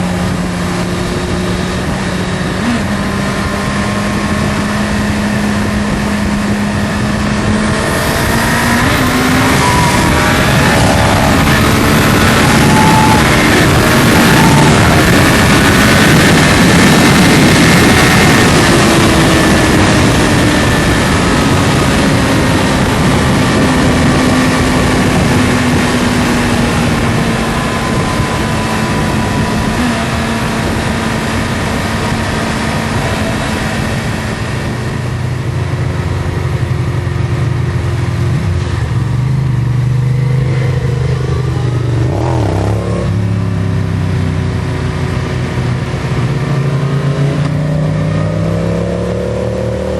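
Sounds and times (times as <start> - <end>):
heavy rushing noise: 0.0 - 49.9
vehicle engine running hard: 0.0 - 49.9.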